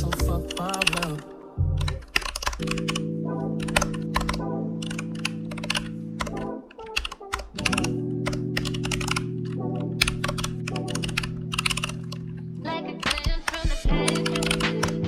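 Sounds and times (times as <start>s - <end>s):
background music: 0.0s - 15.0s
rapid keyboard typing: 0.0s - 15.0s.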